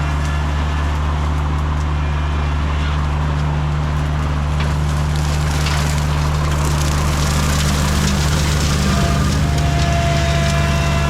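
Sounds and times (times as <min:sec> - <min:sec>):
tractor engine under load: 0:00.0 - 0:11.0
brush being shredded: 0:04.0 - 0:11.0.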